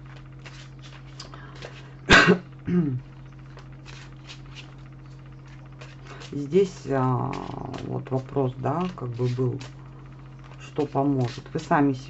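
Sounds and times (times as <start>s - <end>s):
woman clearing her throat: 2.1s - 3.0s
woman coughing: 2.1s - 3.0s.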